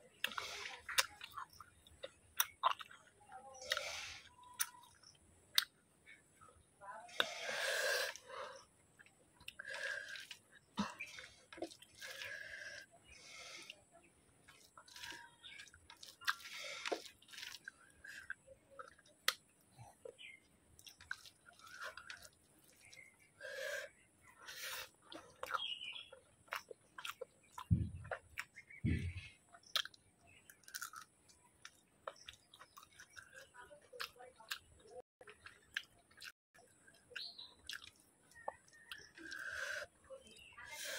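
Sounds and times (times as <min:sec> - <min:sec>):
person chewing: 0:00.0 - 0:06.2, 0:07.1 - 0:13.8, 0:14.4 - 0:40.0
mouth clicks and smacks: 0:00.2 - 0:03.0, 0:14.5 - 0:20.2, 0:26.2 - 0:30.0
soft low thumps: 0:27.6 - 0:29.4.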